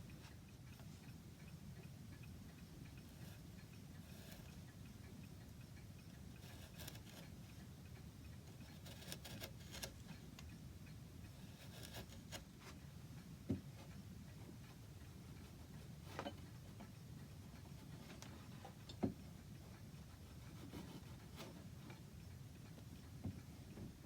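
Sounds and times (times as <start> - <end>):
chisel scraping clicks: 6.4 - 7.3, 8.6 - 10.1.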